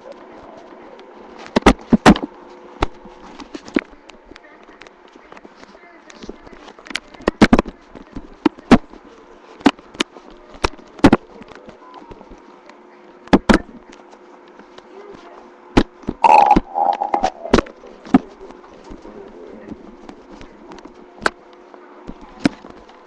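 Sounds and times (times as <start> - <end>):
stomach growling and gurgling: 16.2 - 17.8.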